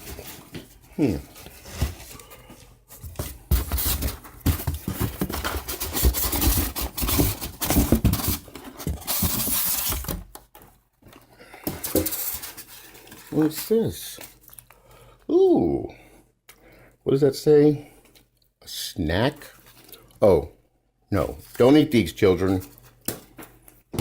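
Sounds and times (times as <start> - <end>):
packing material rustling: 3.2 - 10.3.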